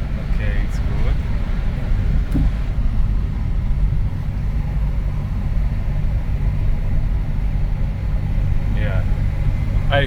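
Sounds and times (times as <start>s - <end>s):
car engine low rumble: 0.0s - 10.0s
road noise: 0.0s - 10.0s.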